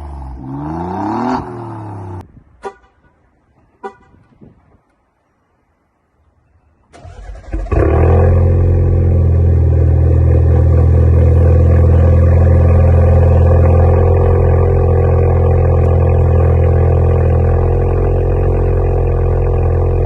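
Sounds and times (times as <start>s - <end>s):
car engine starting and idling: 6.9s - 20.0s.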